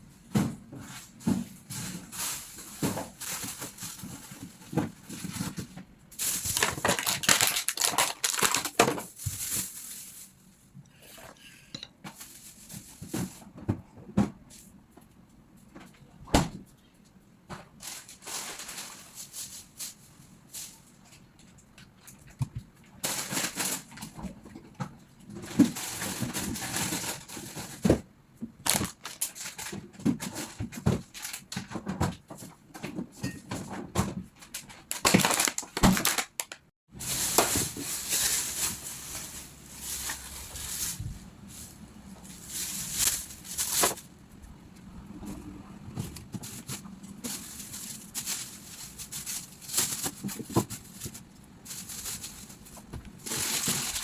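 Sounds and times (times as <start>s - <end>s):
plastic bags crinkling: 1.1s - 10.7s, 12.1s - 13.4s, 17.8s - 21.0s, 23.0s - 24.1s, 28.6s - 31.7s, 34.5s - 44.4s, 46.1s - 54.0s.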